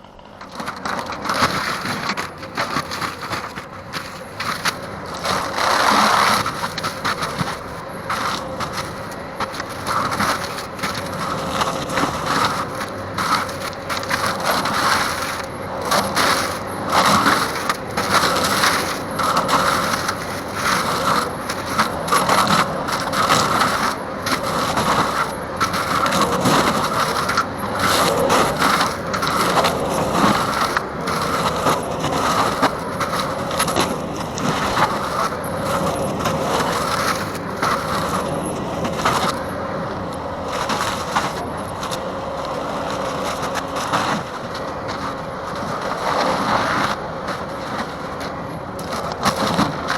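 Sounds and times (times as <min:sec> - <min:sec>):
wood breaking clatter and crackle: 0:00.0 - 0:39.4
forestry mulcher grinding: 0:00.0 - 0:49.9.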